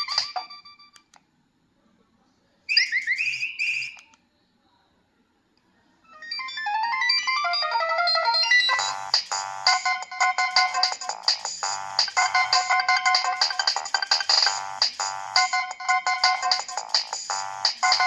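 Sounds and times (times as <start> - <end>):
mobile phone ringtone melody: 0.0 - 1.0, 6.1 - 18.0.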